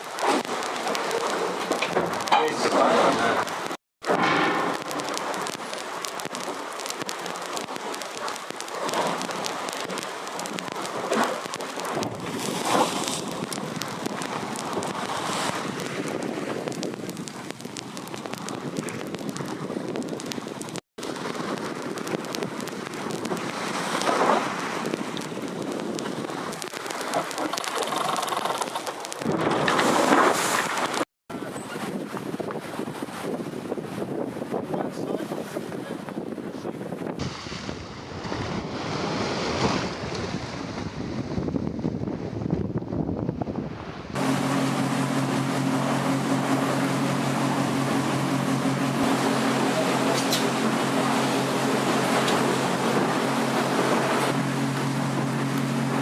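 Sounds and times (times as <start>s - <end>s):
water rushing and spraying: 0.0s - 31.0s, 37.2s - 41.2s, 44.0s - 56.0s
wind buffeting microphone: 11.5s - 27.0s, 29.2s - 56.0s.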